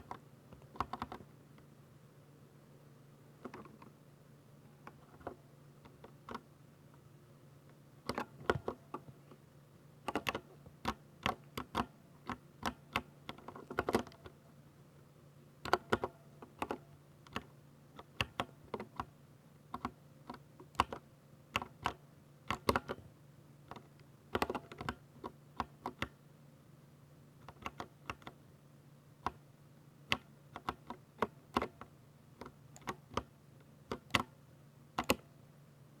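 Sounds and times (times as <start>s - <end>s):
faint low hum: 0.0s - 36.0s
mechanical keyboard key clicks: 35.0s - 35.2s.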